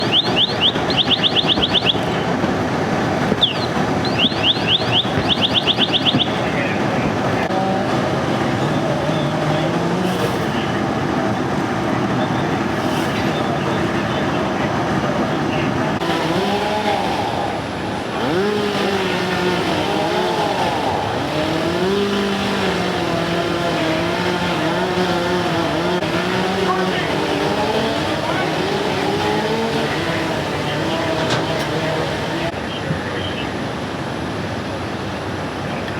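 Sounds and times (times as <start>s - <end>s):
car alarm chirping: 0.0s - 2.4s, 3.3s - 6.8s
engine revving: 0.0s - 32.6s
noisy background: 0.0s - 35.9s.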